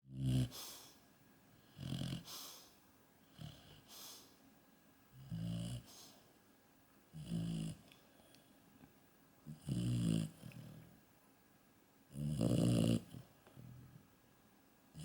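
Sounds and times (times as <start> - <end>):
dog snoring: 0.1 - 0.6, 1.6 - 2.7, 3.3 - 3.9, 5.1 - 6.1, 7.1 - 7.8, 9.4 - 11.0, 12.1 - 14.0.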